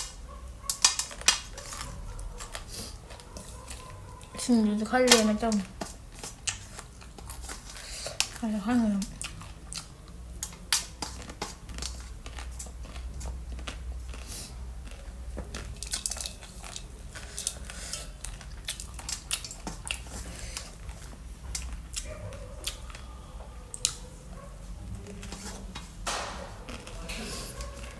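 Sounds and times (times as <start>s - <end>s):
person chewing crunchy food: 0.0s - 4.5s, 5.6s - 8.4s, 9.0s - 24.1s.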